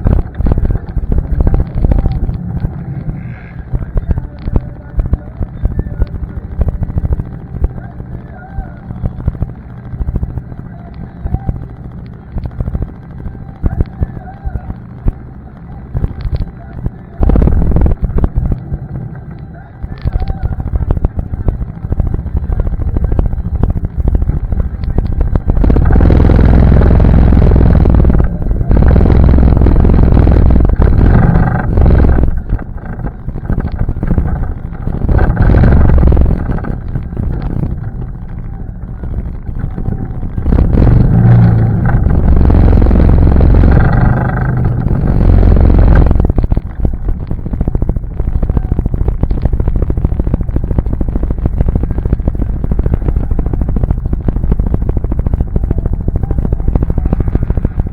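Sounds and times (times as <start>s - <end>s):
atv engine revving: 16.0s - 57.9s.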